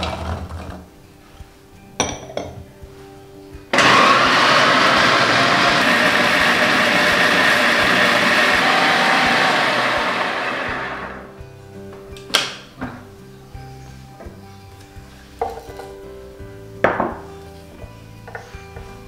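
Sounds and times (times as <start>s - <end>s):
electric blender grinding: 3.7s - 11.3s.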